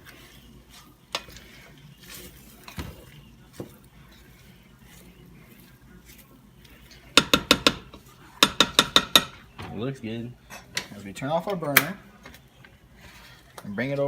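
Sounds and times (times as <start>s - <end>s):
food squishing while stirred: 0.0s - 14.0s
utensil clicking against pan: 7.1s - 9.4s.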